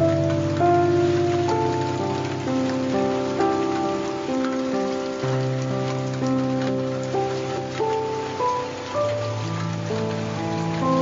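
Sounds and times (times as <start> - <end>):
slow calm music: 0.0 - 11.0
steady rain: 0.0 - 11.0.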